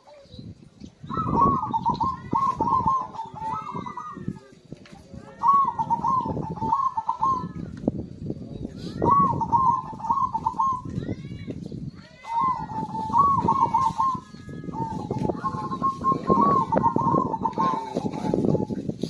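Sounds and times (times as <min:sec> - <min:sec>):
dove cooing: 0:01.0 - 0:04.4, 0:05.3 - 0:07.7, 0:09.0 - 0:10.9, 0:12.2 - 0:19.0.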